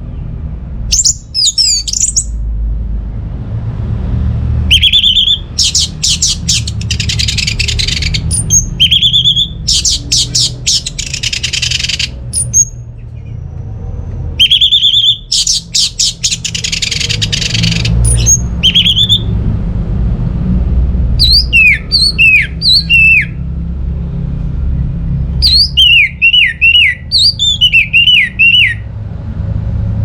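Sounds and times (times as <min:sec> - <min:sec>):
thrush singing whistles and trills: 0:00.9 - 0:02.4, 0:04.7 - 0:13.4, 0:14.4 - 0:19.4, 0:21.2 - 0:23.4, 0:25.4 - 0:28.9.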